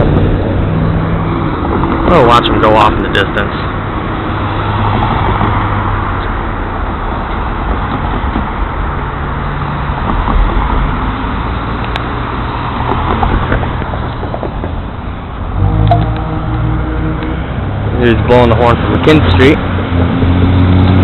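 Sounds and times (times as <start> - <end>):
diesel locomotive engine drone: 13.1 - 21.0.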